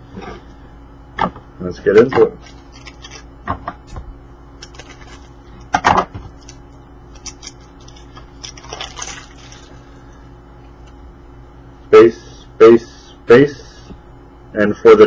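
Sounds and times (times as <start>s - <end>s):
wrapper and cards rustling: 2.4s - 3.3s, 4.6s - 5.4s, 6.3s - 9.8s
wrapper ripping: 2.4s - 3.3s, 4.6s - 5.4s, 6.4s - 9.8s.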